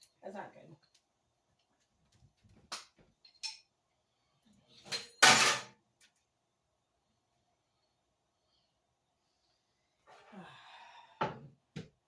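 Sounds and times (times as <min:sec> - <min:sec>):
kitchenware clicking and clattering: 0:02.7 - 0:03.7, 0:04.7 - 0:05.8.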